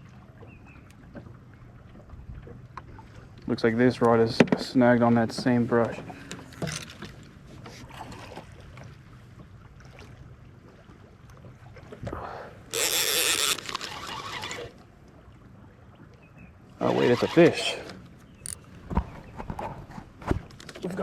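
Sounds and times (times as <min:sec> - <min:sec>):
boat motor humming: 0:12.5 - 0:19.4.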